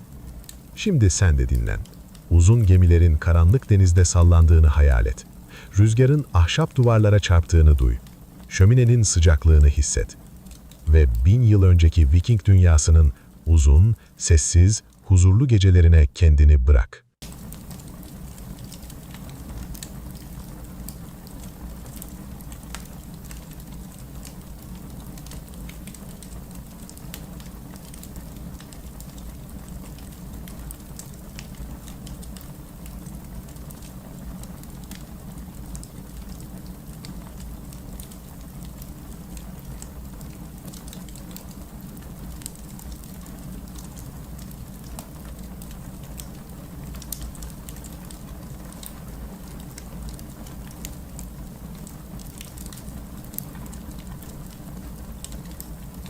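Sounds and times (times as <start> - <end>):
wood fire crackling and popping: 0.0 - 15.1, 17.2 - 56.0
steady low rumble: 0.8 - 10.2, 10.8 - 17.0.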